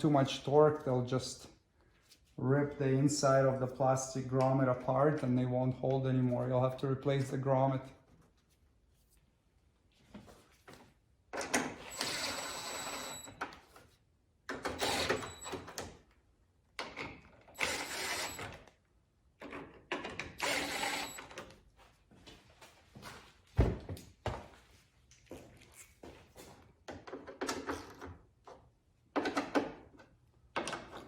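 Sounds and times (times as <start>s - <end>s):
power driver whirring: 11.8s - 13.4s, 14.7s - 15.6s, 17.6s - 18.6s, 20.4s - 21.4s.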